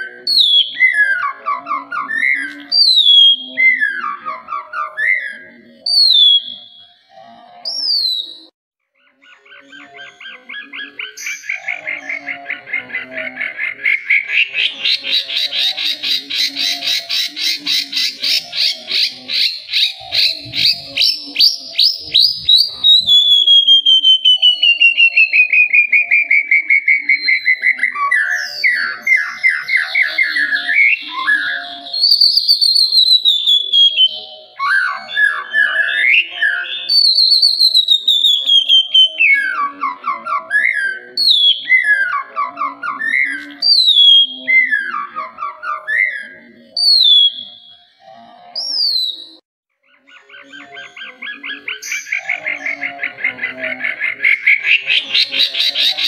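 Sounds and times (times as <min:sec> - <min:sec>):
songbird singing: 0:00.0 - 0:56.0.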